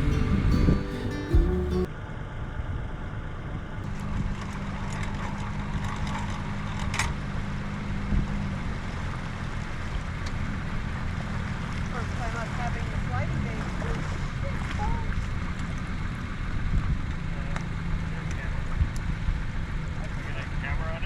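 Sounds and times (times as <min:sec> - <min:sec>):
motor engine humming: 0:00.0 - 0:01.9.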